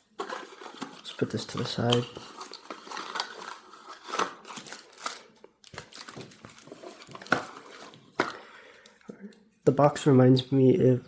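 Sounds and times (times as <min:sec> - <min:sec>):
paper and cardboard rustling: 0:00.0 - 0:08.4.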